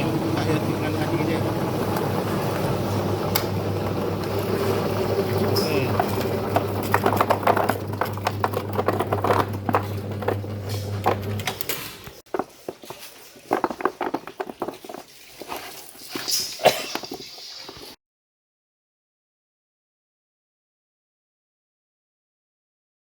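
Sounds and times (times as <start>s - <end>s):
peeling machine motor hum: 0.0s - 11.6s
rhizomes knocking and rattling: 0.1s - 15.7s
irregular knocks and clatter: 1.8s - 18.0s.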